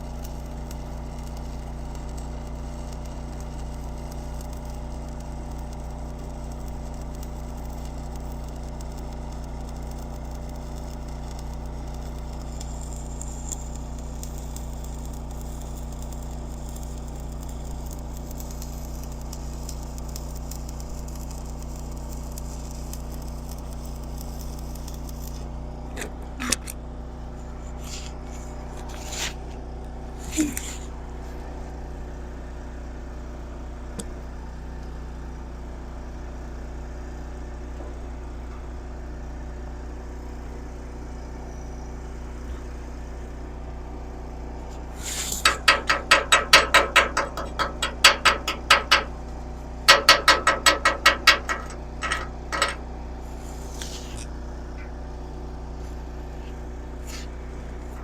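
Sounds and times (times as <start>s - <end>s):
low mechanical hum: 0.0s - 58.0s
sharp clicks or knocks: 45.3s - 49.1s, 49.9s - 52.8s.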